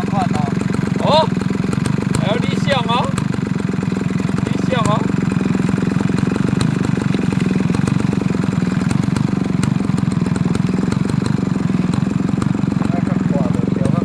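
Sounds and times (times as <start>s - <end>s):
small engine running: 0.0s - 14.0s
sharp ticks: 0.6s - 14.0s.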